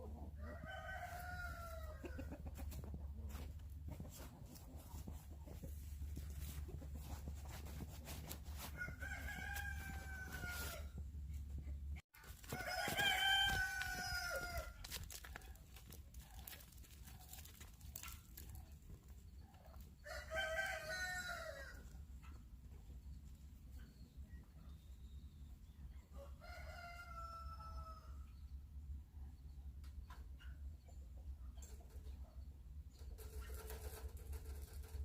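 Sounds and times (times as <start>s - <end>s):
rooster crowing: 0.4s - 2.1s, 8.7s - 11.0s, 12.4s - 14.8s, 20.0s - 21.8s, 26.2s - 28.2s.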